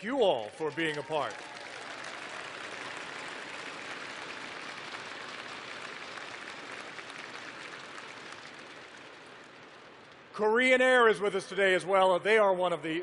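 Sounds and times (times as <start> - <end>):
large audience applauding: 0.0 - 10.3.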